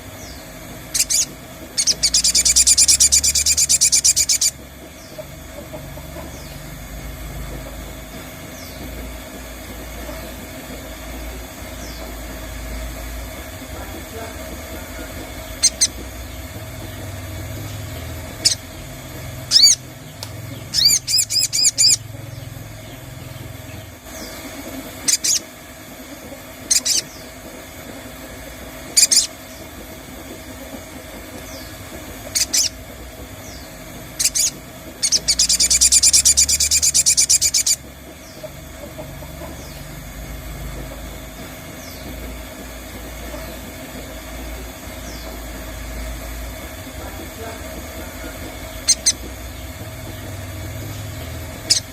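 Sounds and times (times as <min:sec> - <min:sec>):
fast loud bird trill: 0:00.0 - 0:06.8, 0:15.5 - 0:16.4, 0:17.4 - 0:25.5, 0:26.6 - 0:27.4, 0:28.9 - 0:29.7, 0:31.4 - 0:40.0, 0:48.7 - 0:49.8, 0:50.6 - 0:51.9
low background hum: 0:00.0 - 0:51.9
sharp high bird calls: 0:00.2 - 0:05.2, 0:15.6 - 0:16.4, 0:17.7 - 0:25.5, 0:26.6 - 0:27.3, 0:28.9 - 0:29.7, 0:31.4 - 0:32.8, 0:33.4 - 0:38.5, 0:48.7 - 0:49.8, 0:51.0 - 0:51.9.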